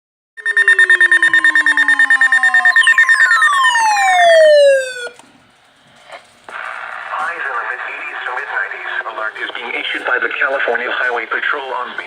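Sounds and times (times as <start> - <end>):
falling siren-like sweeps: 0.4 - 5.2
rapidly pulsing high alarm tone: 0.4 - 5.2.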